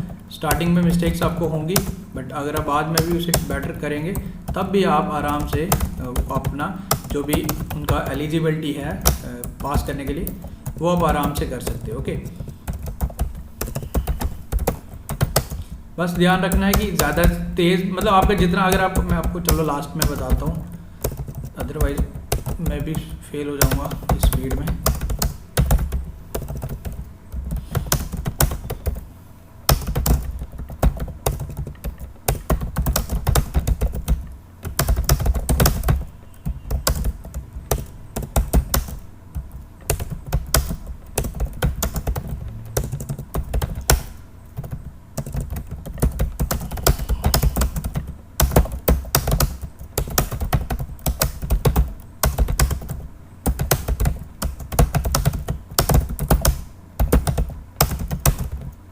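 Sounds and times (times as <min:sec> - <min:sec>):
fast typing on a keyboard: 0:00.0 - 0:29.0, 0:29.7 - 0:58.9.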